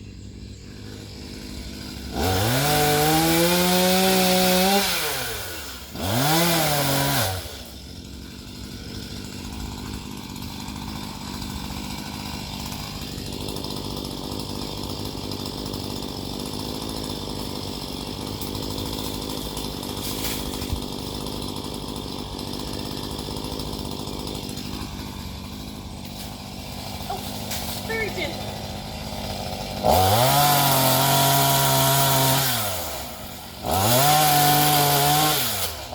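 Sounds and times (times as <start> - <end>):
chainsaw revving and idling: 0.0 - 35.9.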